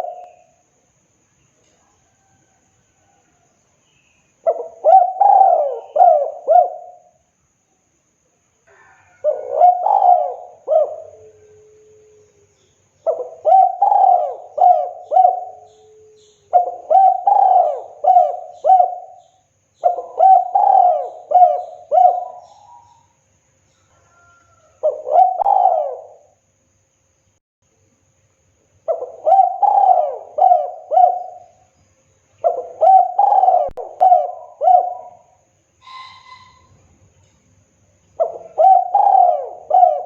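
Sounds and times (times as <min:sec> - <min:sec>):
dove cooing: 0:00.0 - 0:00.5, 0:04.4 - 0:07.1, 0:08.7 - 0:12.2, 0:13.0 - 0:23.1, 0:24.1 - 0:26.4, 0:28.9 - 0:31.6, 0:32.4 - 0:36.8, 0:38.2 - 0:40.0.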